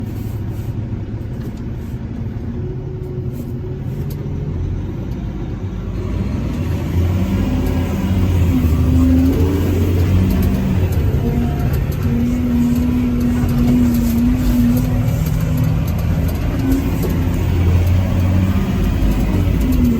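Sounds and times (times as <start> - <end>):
diesel engine rumbling: 0.0 - 19.9.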